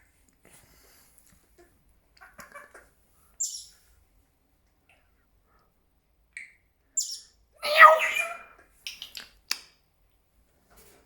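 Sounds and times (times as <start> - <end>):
parrot chattering: 7.6 - 8.5
parrot squawk: 7.6 - 8.5.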